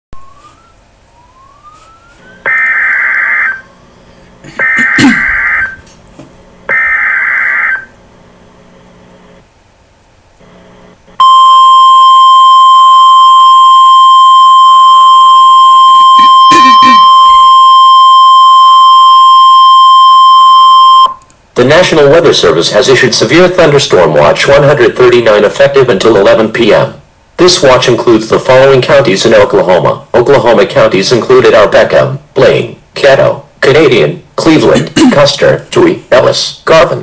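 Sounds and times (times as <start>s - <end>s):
steady single-pitched warning tone: 0.2s - 5.9s, 10.4s - 21.2s
warbling digital data tones: 4.6s - 5.8s.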